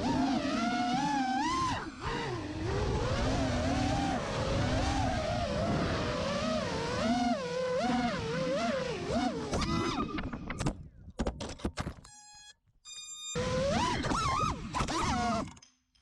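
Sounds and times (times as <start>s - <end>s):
drone motors whining: 12.2s - 15.6s.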